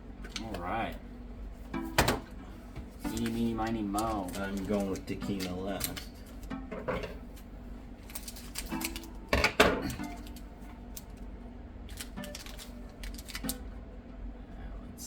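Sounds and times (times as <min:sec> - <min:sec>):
foil pack crinkling: 0:03.0 - 0:06.5, 0:08.0 - 0:09.2, 0:11.9 - 0:13.6.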